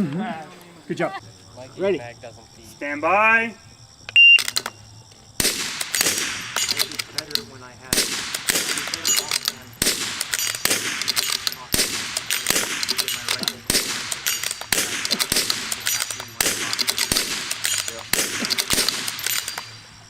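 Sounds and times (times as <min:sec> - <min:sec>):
rifle shots with echo: 0:05.4 - 0:19.8.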